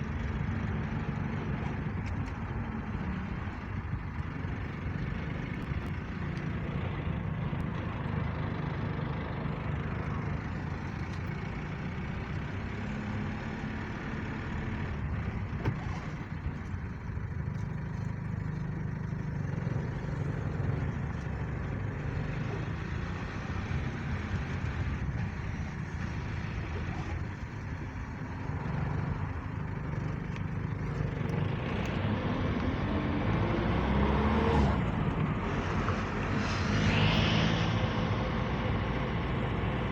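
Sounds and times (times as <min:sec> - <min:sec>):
road noise: 0:00.0 - 0:39.9
vehicle engine rumble: 0:00.0 - 0:39.9
rising tone: 0:31.7 - 0:39.9.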